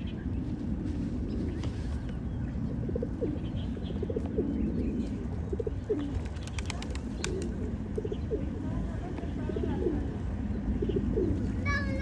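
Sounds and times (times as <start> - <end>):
pigeons cooing: 2.7 - 8.6, 9.5 - 12.0.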